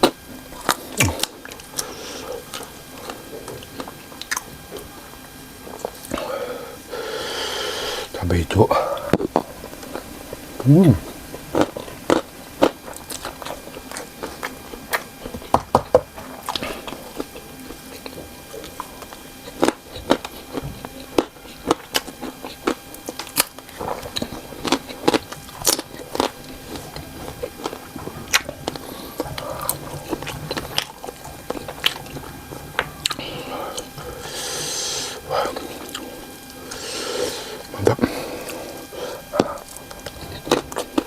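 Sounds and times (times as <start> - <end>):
person chewing food: 0.0 - 7.1, 8.9 - 41.0
wet mouth clicks: 1.0 - 1.4.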